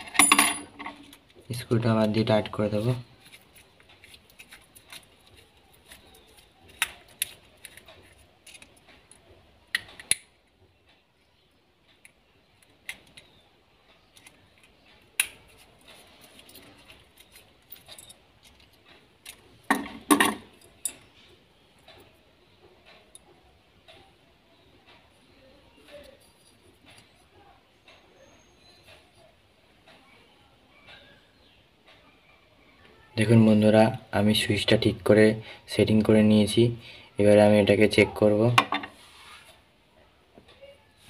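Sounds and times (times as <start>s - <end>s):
switch parts being handled: 0.0s - 10.4s, 14.0s - 21.2s, 38.5s - 39.0s.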